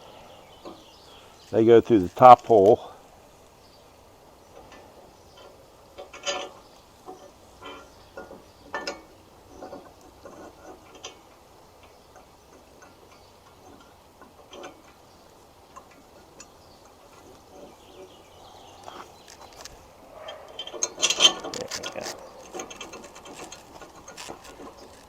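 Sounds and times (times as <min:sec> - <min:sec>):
bike carrier parts clicking: 0:15.7 - 0:25.0.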